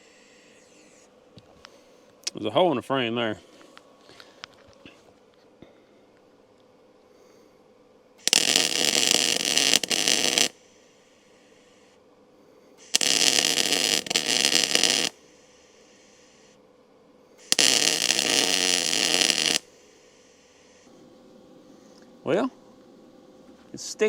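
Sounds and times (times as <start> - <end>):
arc welder crackling: 8.2 - 11.9, 12.8 - 16.5, 17.4 - 21.0.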